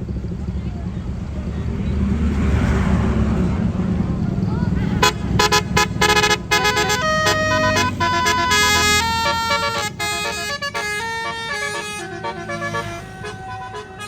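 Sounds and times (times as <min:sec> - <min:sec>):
bus engine running: 0:00.0 - 0:14.0
multi-tone air horn melody: 0:04.8 - 0:14.0.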